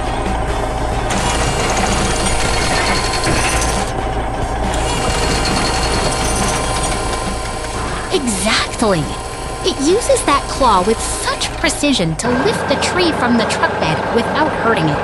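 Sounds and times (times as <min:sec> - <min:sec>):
excavator engine running: 0:00.0 - 0:15.0
mechanical rattle: 0:01.1 - 0:04.0, 0:04.6 - 0:08.1.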